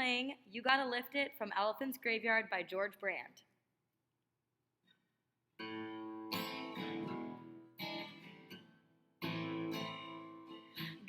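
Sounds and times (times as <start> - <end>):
guitar strumming chords: 5.6 - 11.0.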